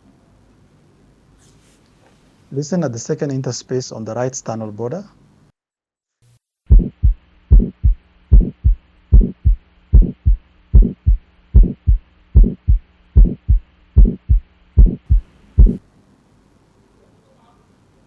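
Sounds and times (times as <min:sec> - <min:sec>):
faint steady hum: 0:00.0 - 0:05.5, 0:06.7 - 0:18.0
heartbeat through stethoscope: 0:06.7 - 0:15.8.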